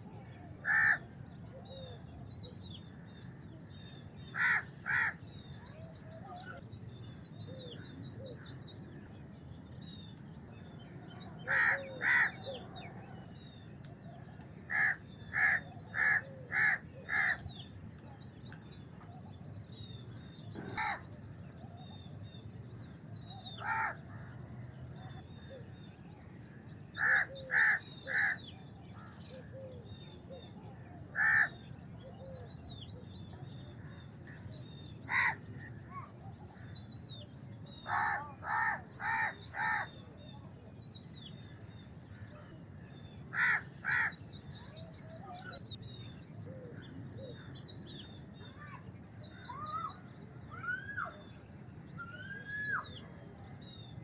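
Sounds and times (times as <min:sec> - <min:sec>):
small birds chirping: 0:00.0 - 0:54.0
crows cawing: 0:00.6 - 0:01.0, 0:04.3 - 0:05.2, 0:11.4 - 0:12.6, 0:14.7 - 0:17.4, 0:20.6 - 0:21.0, 0:23.6 - 0:24.0, 0:27.0 - 0:28.4, 0:31.2 - 0:31.6, 0:35.1 - 0:35.4, 0:37.9 - 0:39.9, 0:43.3 - 0:44.2.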